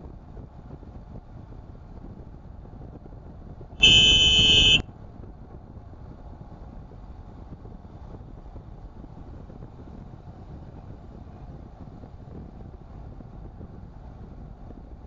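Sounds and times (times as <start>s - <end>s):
road and engine rumble: 0.0s - 15.0s
car horn honking: 3.8s - 4.8s.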